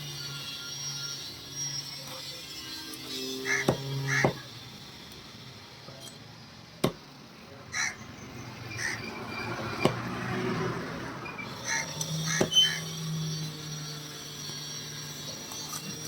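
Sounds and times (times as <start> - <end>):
knife chopping: 3.6 - 4.4, 9.7 - 10.1.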